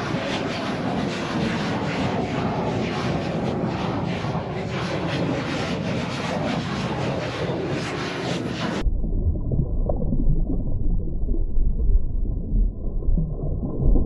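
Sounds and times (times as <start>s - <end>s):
wind: 0.0s - 8.9s
water noise: 8.8s - 14.0s.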